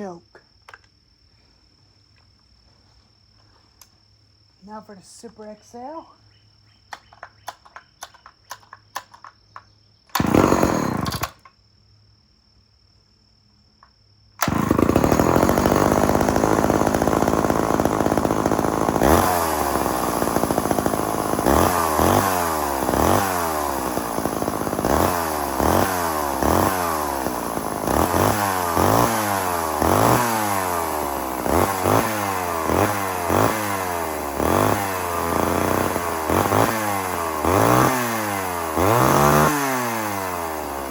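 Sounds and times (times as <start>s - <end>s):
chainsaw starting and revving: 10.1s - 11.5s, 14.4s - 40.9s.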